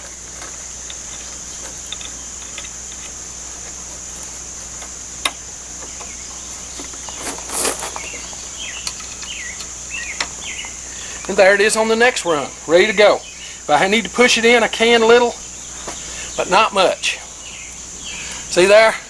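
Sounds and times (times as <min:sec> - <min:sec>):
scraping rustle: 0:00.0 - 0:11.6
insects chirring: 0:00.0 - 0:19.0.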